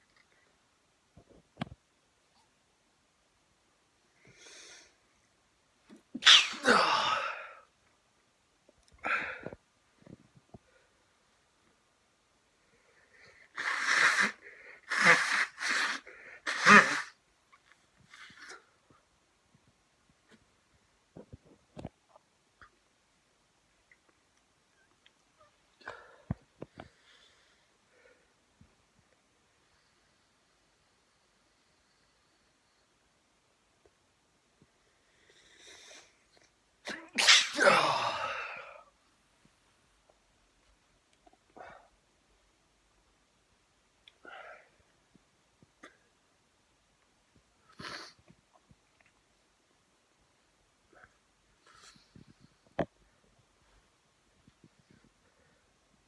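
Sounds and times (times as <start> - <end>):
man sneezing: 6.2 - 7.5, 13.6 - 17.1, 36.9 - 38.8.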